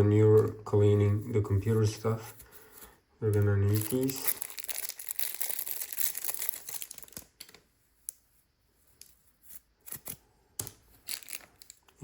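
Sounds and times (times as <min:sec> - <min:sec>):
plastic packaging crinkling: 0:03.2 - 0:07.7, 0:10.9 - 0:12.0.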